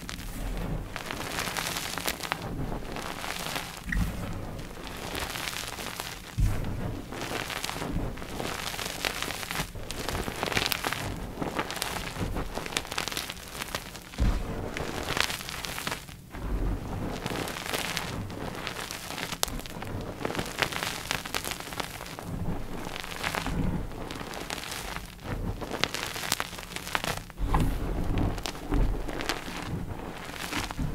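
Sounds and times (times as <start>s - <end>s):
heavy thuds: 3.7s - 5.0s, 6.2s - 7.2s, 14.2s - 14.8s, 27.3s - 30.9s.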